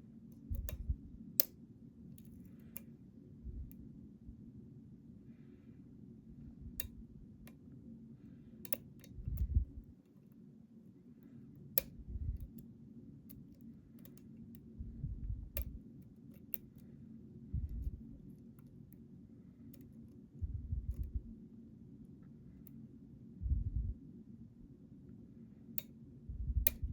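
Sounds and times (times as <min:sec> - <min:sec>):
lock pick clicking pins: 0:08.7 - 0:09.2, 0:13.3 - 0:14.7, 0:15.6 - 0:16.8.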